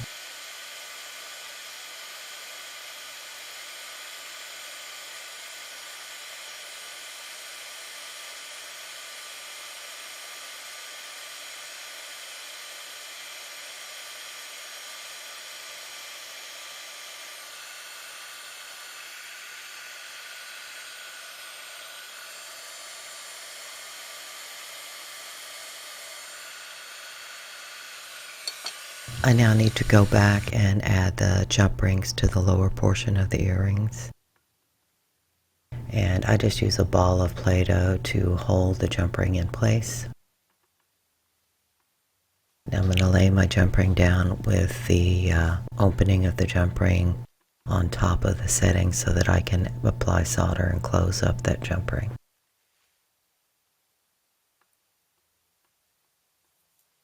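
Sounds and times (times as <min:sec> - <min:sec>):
heat gun blowing: 0:00.0 - 0:31.6.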